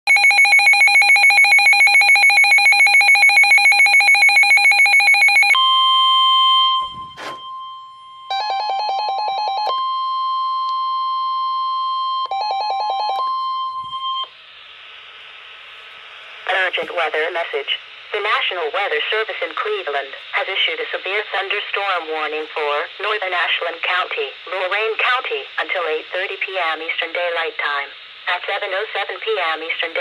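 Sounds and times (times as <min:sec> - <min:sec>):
fast pulsing alarm beep: 0:00.1 - 0:14.3
steady warning alarm tone: 0:00.1 - 0:14.4.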